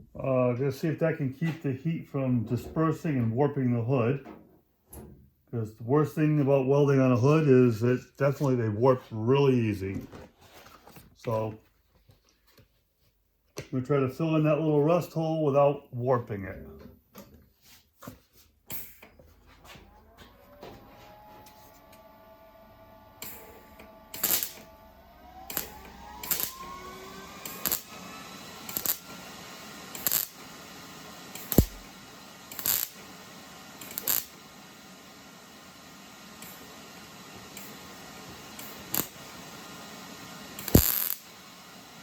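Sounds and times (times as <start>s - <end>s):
short tack weld bursts: 23.2s - 24.7s, 25.5s - 26.6s, 27.4s - 28.0s, 28.6s - 30.7s, 31.3s - 33.2s, 33.8s - 34.8s, 36.3s - 36.7s, 37.5s - 39.8s, 40.5s - 41.4s.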